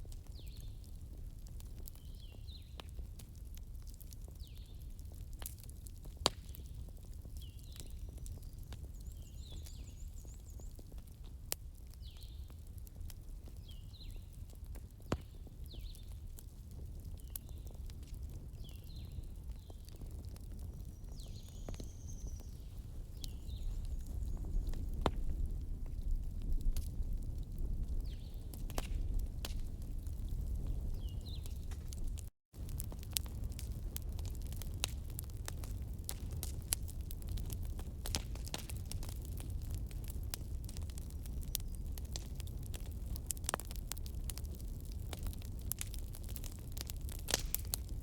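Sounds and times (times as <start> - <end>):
burning wood crackling: 0.0 - 48.0.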